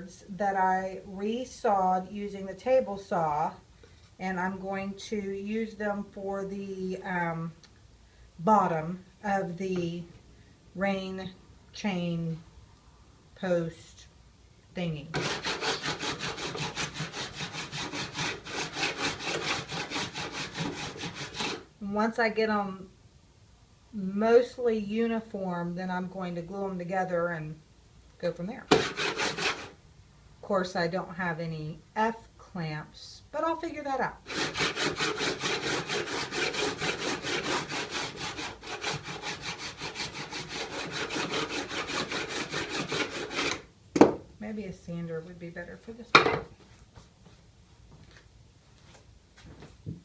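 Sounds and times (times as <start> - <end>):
hand tool scraping wooden board: 15.1 - 21.7, 28.7 - 29.8, 34.3 - 43.6.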